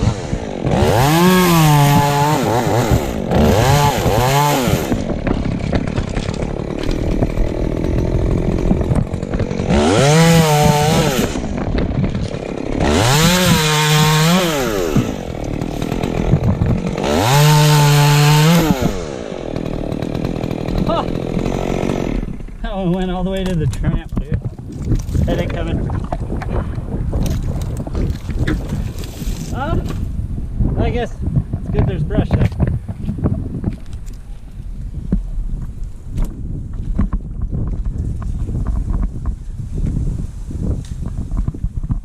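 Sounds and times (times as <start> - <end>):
chainsaw revving: 0.0 - 22.8.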